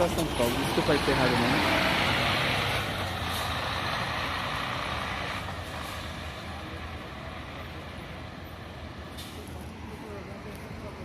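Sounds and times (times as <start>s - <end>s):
bus engine driving past: 0.0s - 11.0s.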